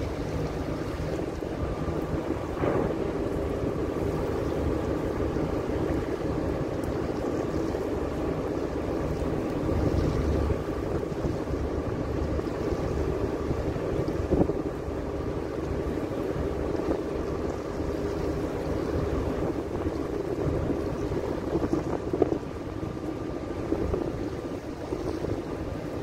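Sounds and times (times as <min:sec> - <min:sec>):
ship engines running: 0:00.0 - 0:26.0
wind buffeting microphone: 0:00.0 - 0:26.0.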